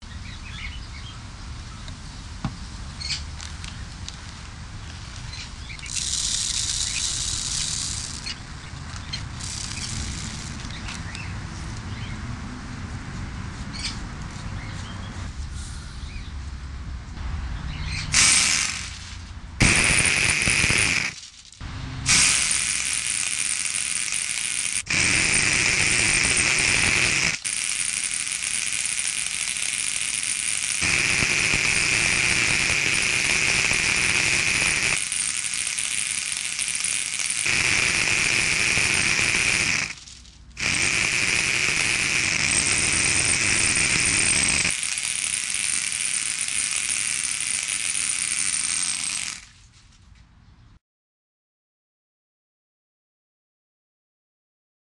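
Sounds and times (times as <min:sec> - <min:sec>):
steady background noise: 0:00.0 - 0:50.8
flamethrower hissing rush: 0:18.1 - 0:21.2, 0:24.8 - 0:27.6, 0:30.5 - 0:35.0, 0:37.1 - 0:40.0, 0:40.6 - 0:44.8.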